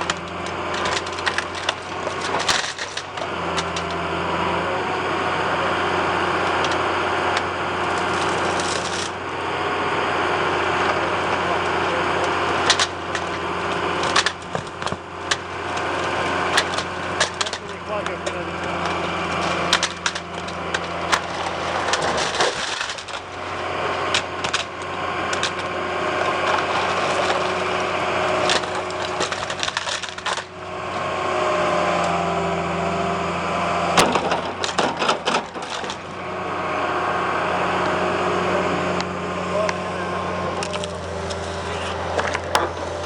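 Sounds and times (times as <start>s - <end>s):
material cracking and crunching: 0.0s - 4.0s, 6.5s - 9.2s, 11.9s - 30.6s, 34.0s - 36.1s, 40.5s - 43.0s
excavator engine hum: 0.0s - 43.0s.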